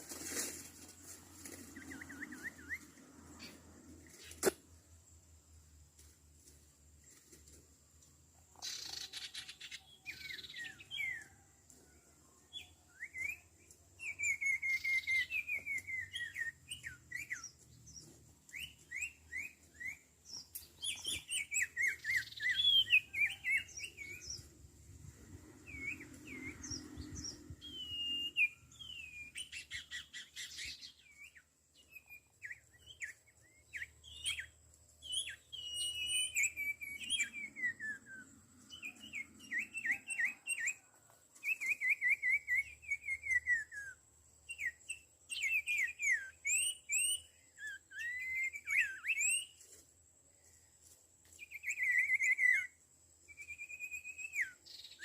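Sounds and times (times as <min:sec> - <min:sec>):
scratchy rustles: 0:00.0 - 0:01.8
songbird chirping and whistling: 0:01.6 - 0:04.5, 0:08.6 - 0:11.4, 0:12.5 - 0:49.8, 0:51.2 - 0:55.0.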